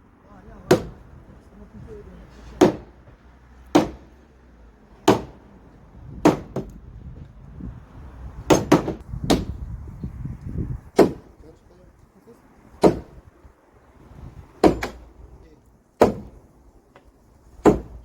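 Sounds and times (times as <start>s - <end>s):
hammer striking timber: 0.7s - 1.1s, 2.5s - 4.2s, 5.0s - 5.4s, 6.2s - 6.8s, 8.5s - 9.6s, 11.0s - 11.4s, 12.8s - 13.2s, 14.6s - 15.1s, 16.0s - 18.0s.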